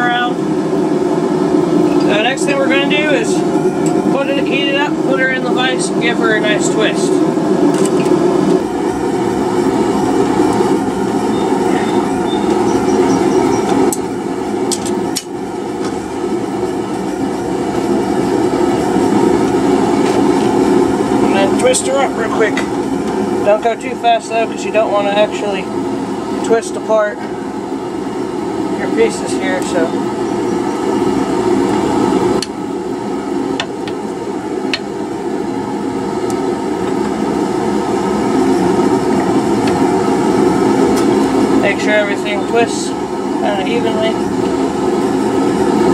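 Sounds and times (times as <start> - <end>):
forge rushing noise: 0.0 - 45.9
roar of shop equipment: 0.0 - 45.9.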